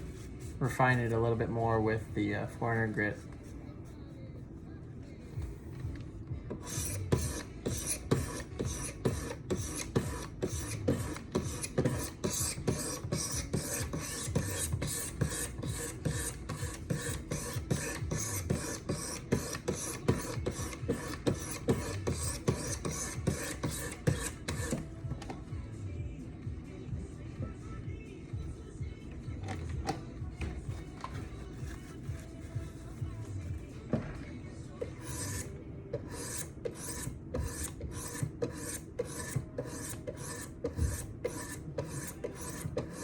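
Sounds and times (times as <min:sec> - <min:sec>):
sharpening stone scraping knife blade: 0:06.6 - 0:24.8, 0:34.9 - 0:43.0.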